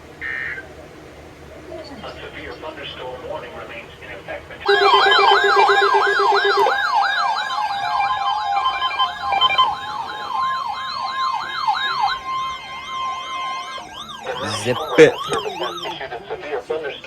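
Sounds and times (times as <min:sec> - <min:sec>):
electronic siren yelping: 0:00.2 - 0:00.7, 0:04.7 - 0:16.2
rapid low beeping: 0:04.7 - 0:16.0
steady high tone: 0:04.7 - 0:16.0.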